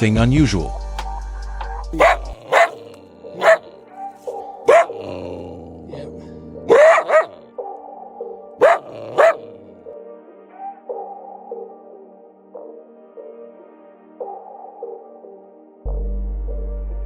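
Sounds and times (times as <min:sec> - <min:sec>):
soft background music: 0:00.0 - 0:17.0
dog barking: 0:01.9 - 0:05.5, 0:06.7 - 0:07.8, 0:08.6 - 0:09.7.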